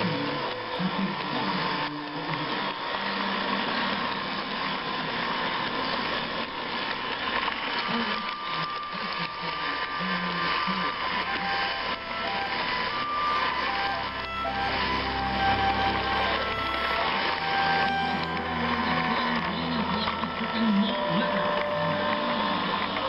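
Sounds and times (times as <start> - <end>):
electric motor whirring: 7.6 - 23.0.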